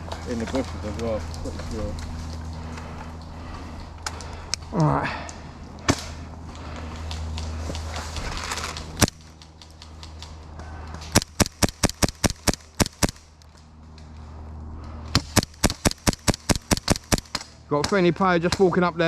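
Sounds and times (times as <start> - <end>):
airsoft guns firing: 11.1 - 13.2, 15.2 - 18.7.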